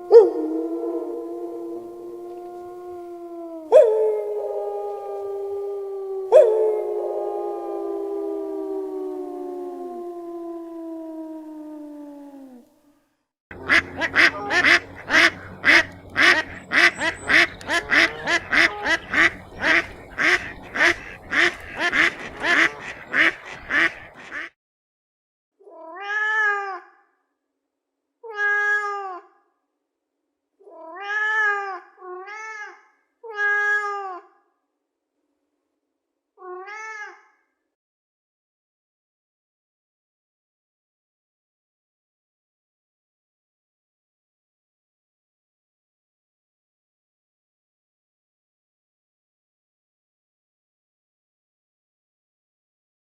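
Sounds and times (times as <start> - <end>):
falling howl-like tone: 0.0 - 11.9
cat meowing: 30.6 - 34.2.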